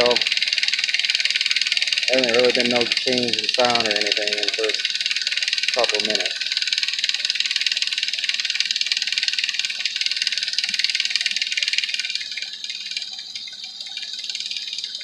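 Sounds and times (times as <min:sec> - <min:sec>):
car engine idling: 0:00.0 - 0:00.4, 0:02.0 - 0:06.4
engine lifter ticking: 0:00.0 - 0:15.0.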